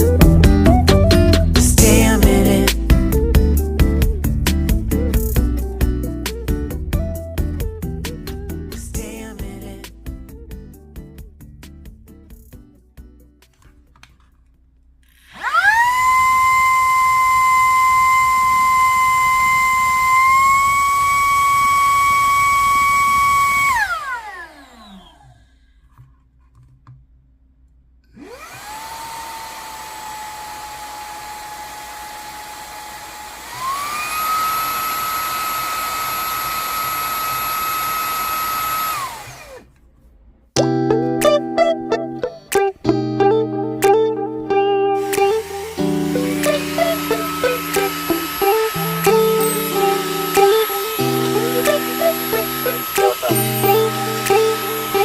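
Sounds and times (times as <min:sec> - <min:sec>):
car vacuum cleaner whining: 0:15.3 - 0:25.8, 0:28.1 - 0:39.8, 0:45.0 - 0:55.0.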